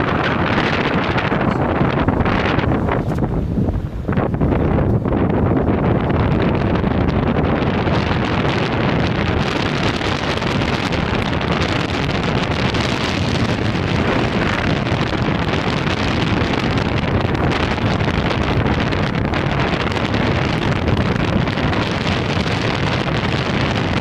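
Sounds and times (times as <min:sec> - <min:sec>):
wind noise on microphone: 0:00.0 - 0:24.0
vehicle road noise: 0:07.9 - 0:22.8.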